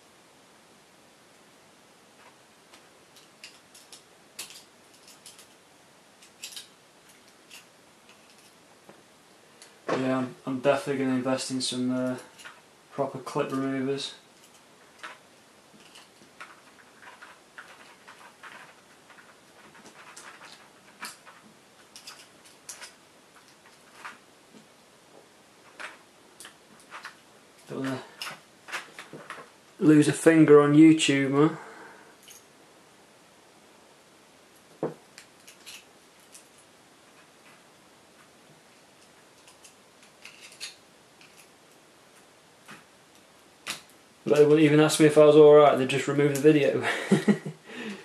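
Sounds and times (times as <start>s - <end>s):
small metal clicks and scrapes: 2.2s - 5.6s, 6.2s - 8.6s, 12.0s - 12.7s, 14.4s - 24.7s, 25.6s - 29.5s, 35.2s - 44.5s
hand tools clicking on lock: 15.8s - 24.2s, 39.4s - 41.5s.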